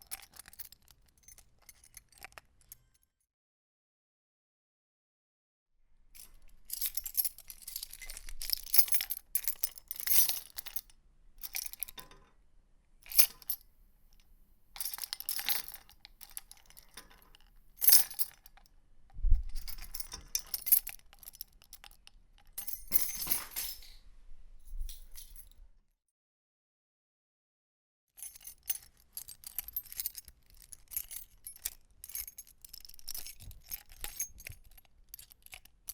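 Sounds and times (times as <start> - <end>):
metal keys jangling: 0.0 - 3.0, 6.2 - 12.2, 13.1 - 13.6, 14.8 - 18.6, 19.5 - 24.0, 24.7 - 25.6, 28.2 - 35.9.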